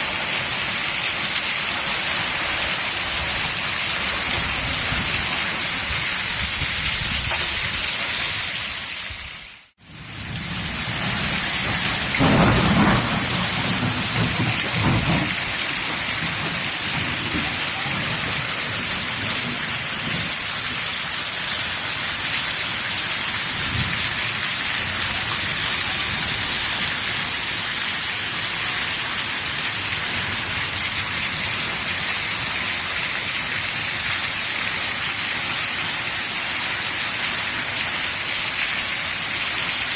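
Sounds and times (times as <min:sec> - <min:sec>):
heavy rain hissing: 0:00.0 - 0:39.9
thunder rumbling: 0:09.9 - 0:20.7.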